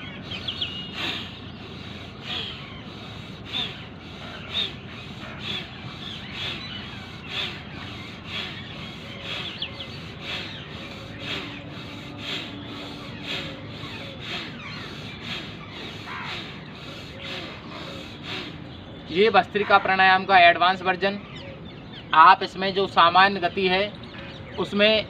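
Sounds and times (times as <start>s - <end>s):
forceful rhythmic breathing: 0.0s - 19.8s.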